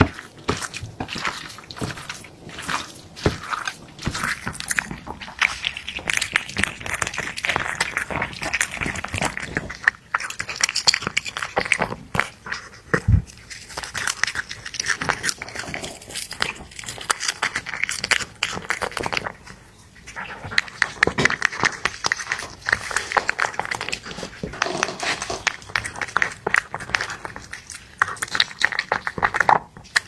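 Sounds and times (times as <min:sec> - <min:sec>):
cat chewing food: 0:00.0 - 0:30.0.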